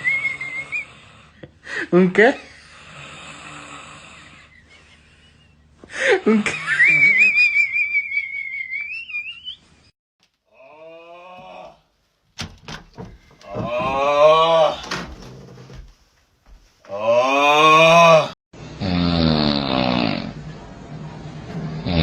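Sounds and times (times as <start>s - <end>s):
person snoring with whistle: 0.0s - 1.3s, 18.8s - 20.3s.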